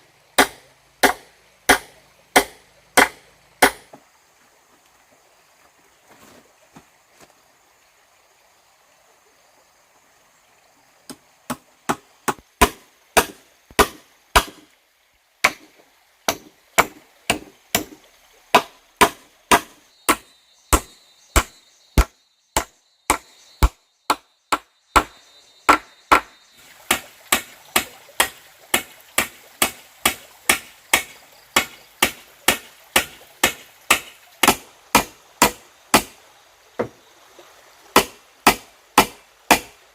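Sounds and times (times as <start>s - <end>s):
sharp strikes on wood: 0.4s - 4.0s, 11.1s - 14.6s, 16.3s - 36.2s, 38.0s - 39.8s.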